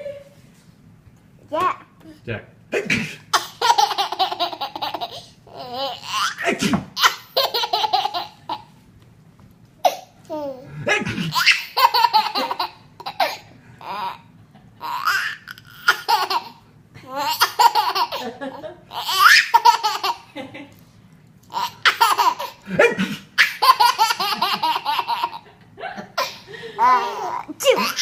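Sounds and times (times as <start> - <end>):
baby laughing: 3.3 - 8.7, 9.8 - 20.4, 21.5 - 25.5, 26.2 - 28.0.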